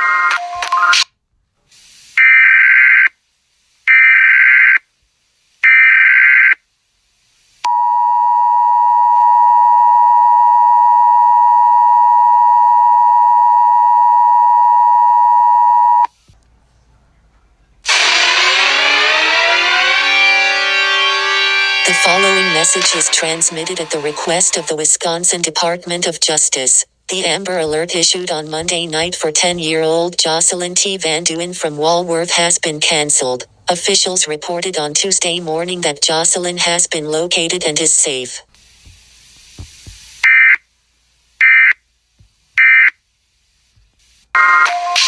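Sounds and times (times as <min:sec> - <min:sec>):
harsh digital data bursts: 0:17.9 - 0:24.7
two-tone attention signal: 0:17.9 - 0:24.7, 0:44.4 - 0:45.0
falling tones: 0:17.9 - 0:24.8.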